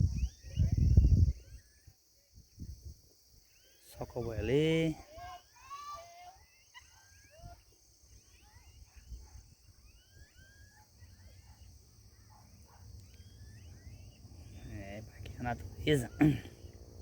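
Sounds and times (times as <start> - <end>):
wind rumble on microphone: 0.0 - 1.7, 2.3 - 3.1
high insect hiss: 0.0 - 17.0
small birds chirping and whistling: 0.0 - 17.0.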